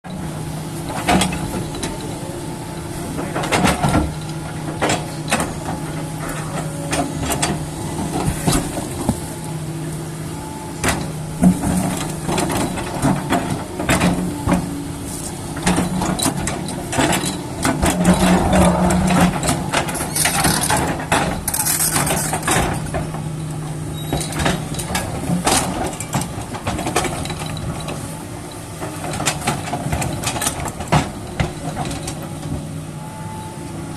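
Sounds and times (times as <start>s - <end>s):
excavator diesel engine running: 0.1s - 33.9s
machine knocks and clatter: 0.9s - 2.2s, 3.2s - 9.3s, 10.8s - 14.8s, 15.5s - 23.3s, 24.0s - 28.0s, 28.8s - 32.7s.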